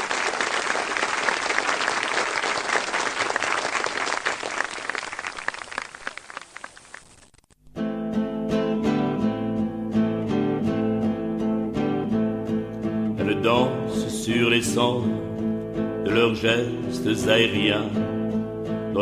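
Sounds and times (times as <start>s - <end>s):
applause: 0.0s - 7.4s
guitar strumming: 7.7s - 19.0s.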